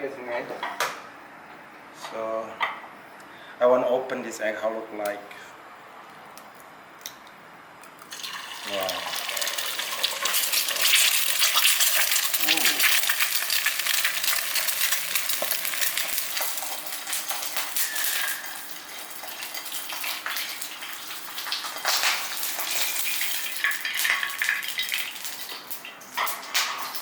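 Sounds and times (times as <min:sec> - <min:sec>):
egg sizzling in hot oil: 0:08.0 - 0:27.0.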